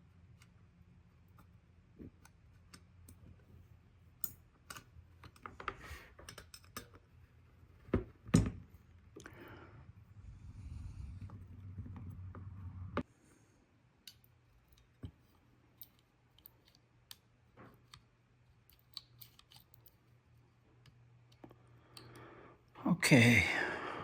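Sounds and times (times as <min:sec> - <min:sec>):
low hum: 0:09.4 - 0:13.0.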